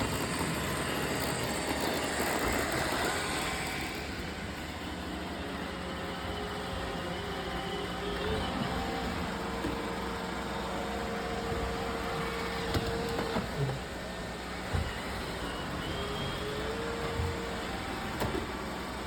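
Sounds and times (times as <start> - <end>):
robot vacuum motor whir: 0.0 - 19.0.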